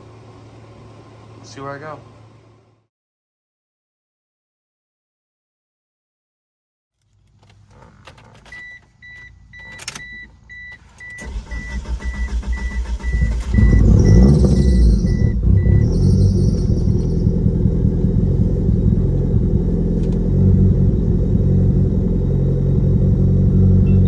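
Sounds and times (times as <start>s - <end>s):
car engine cranking and starting: 7.1s - 24.0s
car engine low rumble: 7.2s - 24.0s
car warning chime beeping: 8.5s - 17.6s.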